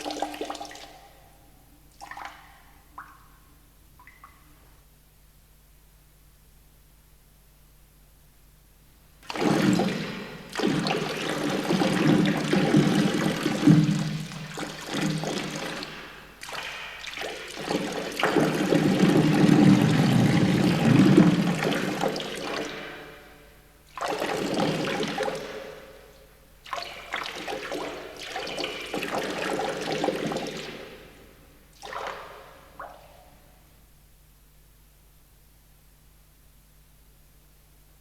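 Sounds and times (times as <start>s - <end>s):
toilet flushing: 0.0s - 0.9s, 9.2s - 23.2s.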